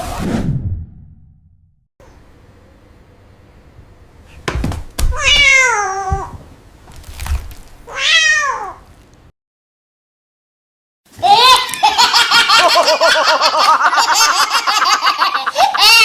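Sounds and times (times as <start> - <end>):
cat meowing: 5.1 - 6.3, 7.9 - 8.8.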